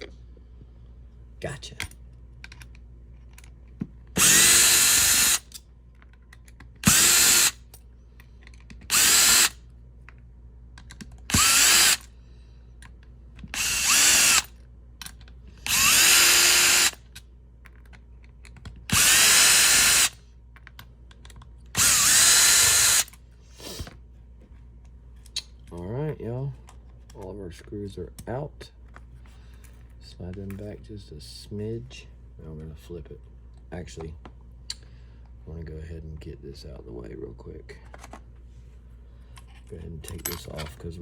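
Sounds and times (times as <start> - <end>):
power driver motor running: 4.2 - 5.5, 6.8 - 7.6, 8.9 - 9.6, 11.3 - 12.1, 13.5 - 14.5, 15.6 - 17.0, 18.9 - 20.2, 21.8 - 23.1.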